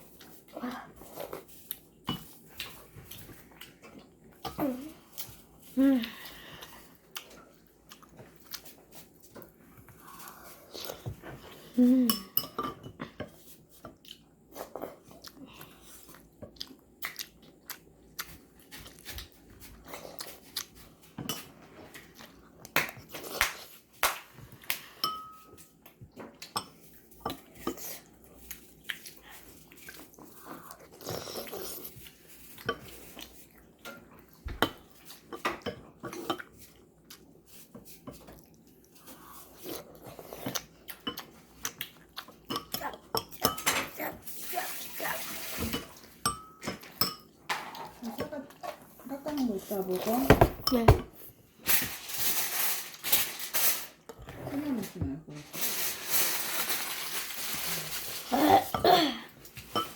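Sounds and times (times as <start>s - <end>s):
chewing: 6.1s - 11.1s, 13.9s - 21.1s, 38.1s - 43.4s.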